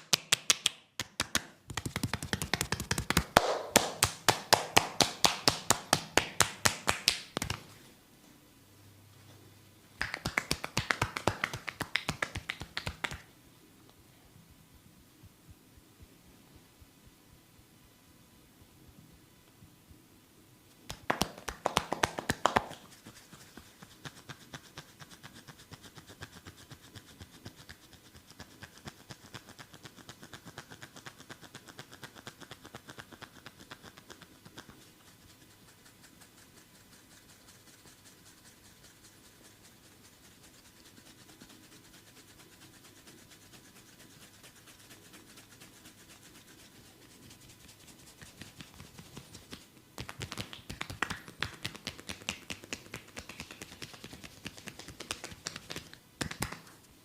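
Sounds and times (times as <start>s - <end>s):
hands slapping bare skin: 0.0s - 7.8s, 10.0s - 13.3s, 20.8s - 23.4s, 47.6s - 56.9s.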